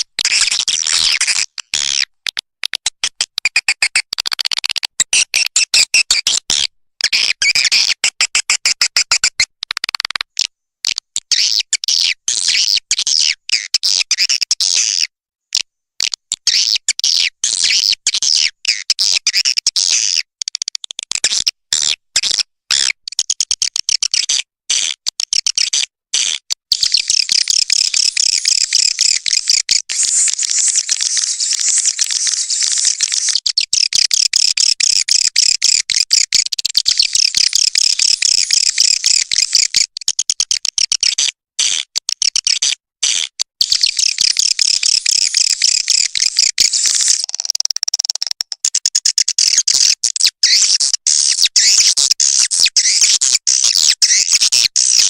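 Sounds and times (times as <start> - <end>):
swiftlets twittering and chirping: 26.8 - 35.7, 36.8 - 40.2, 43.6 - 55.0.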